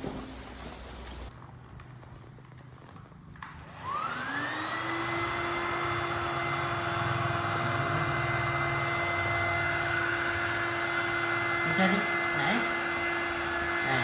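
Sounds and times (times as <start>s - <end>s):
electric pump motor whining: 3.4s - 14.0s.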